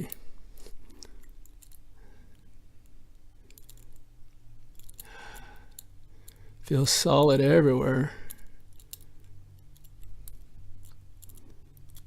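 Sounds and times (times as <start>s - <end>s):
faint lock picking clicks: 1.0s - 6.8s, 8.2s - 12.0s.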